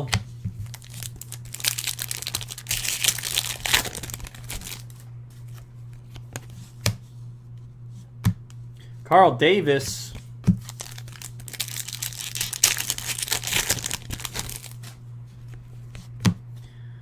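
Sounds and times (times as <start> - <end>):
foil wrapper crinkling and tearing: 0.6 - 5.0, 10.6 - 14.9.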